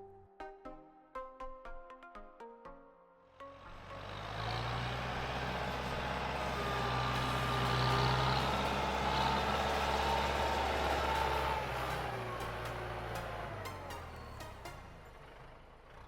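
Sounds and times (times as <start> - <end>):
tractor engine running: 3.6 - 16.0.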